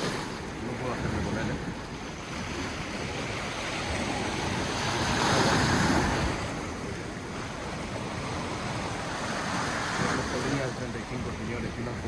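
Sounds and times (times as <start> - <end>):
sea waves breaking on shore: 0.0 - 12.0
wind buffeting microphone: 0.0 - 12.0.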